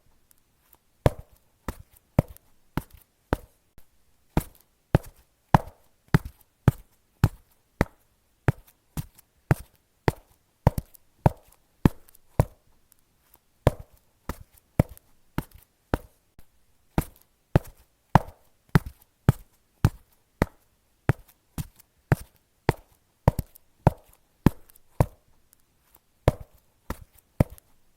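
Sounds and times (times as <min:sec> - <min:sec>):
footsteps on concrete: 0:13.7 - 0:16.2, 0:17.0 - 0:25.2, 0:26.3 - 0:27.6.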